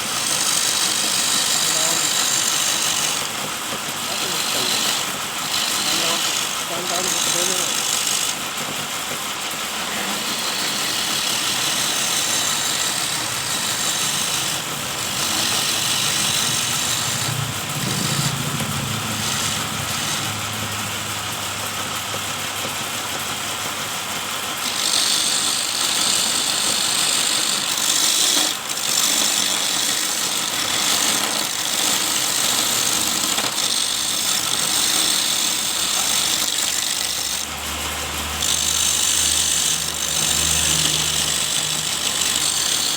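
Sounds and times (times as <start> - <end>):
loud hissing noise: 0.0 - 27.4
wood lathe running: 0.0 - 42.9.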